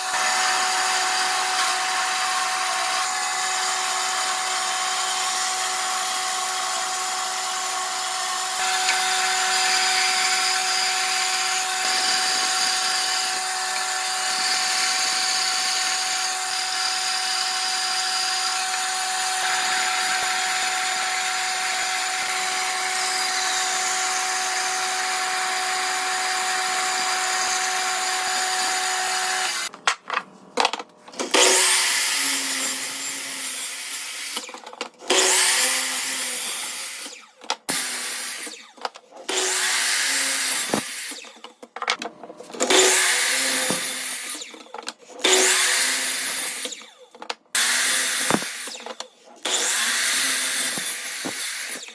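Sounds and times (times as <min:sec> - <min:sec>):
power tool whining on wood: 0:00.0 - 0:29.7, 0:31.1 - 0:41.6, 0:42.4 - 0:51.9.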